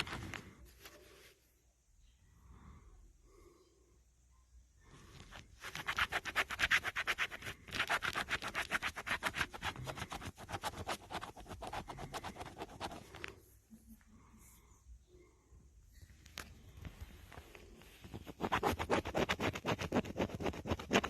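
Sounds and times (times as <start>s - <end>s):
scratching lottery ticket: 5.6s - 13.3s, 18.1s - 21.0s.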